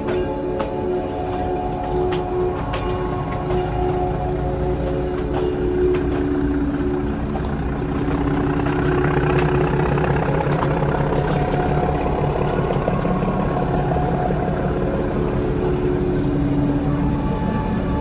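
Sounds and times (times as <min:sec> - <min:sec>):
train engine drone: 0:00.0 - 0:18.0
high whine rising in pitch: 0:06.6 - 0:18.0.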